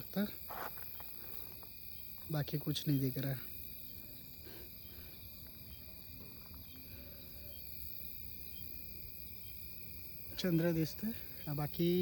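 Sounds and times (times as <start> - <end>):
crickets and insects trilling: 0.0 - 12.0.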